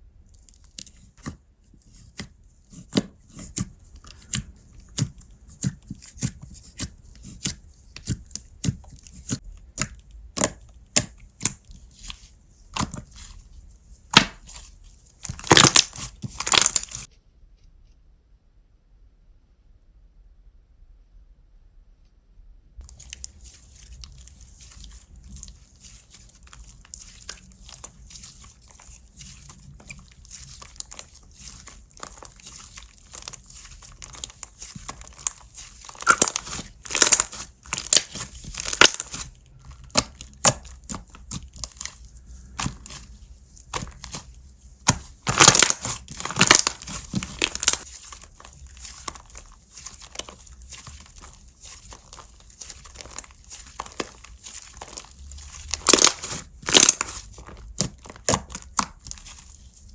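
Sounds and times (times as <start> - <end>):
slime crackling: 0.3 - 17.1, 22.8 - 59.9
slime popping: 14.1 - 17.1, 22.9 - 59.9.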